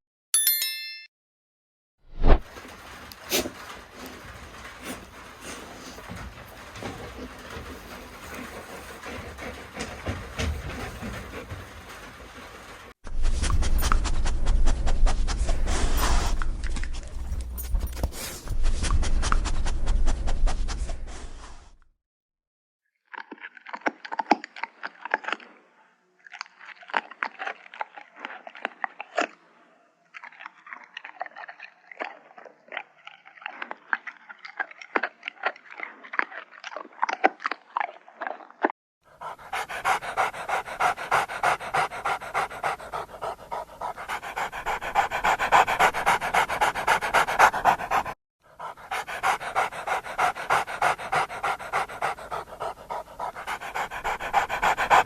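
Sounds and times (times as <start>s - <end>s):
dog panting: 3.3s - 12.8s, 39.1s - 55.0s.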